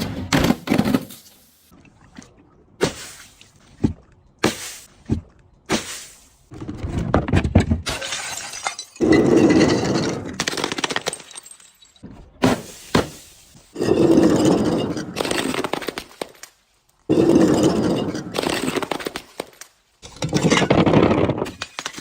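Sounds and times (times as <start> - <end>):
glass bottles breaking: 7.9 - 12.0.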